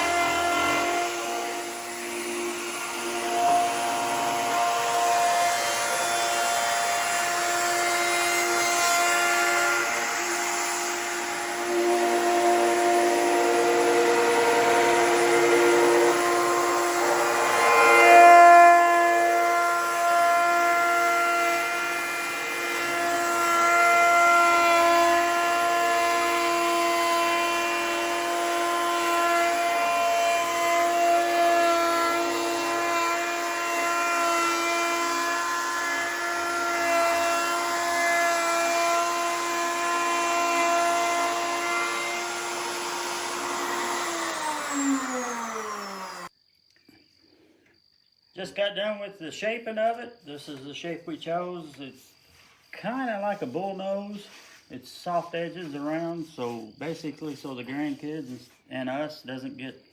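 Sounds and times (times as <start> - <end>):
power tool motor whining: 0.0 - 46.3.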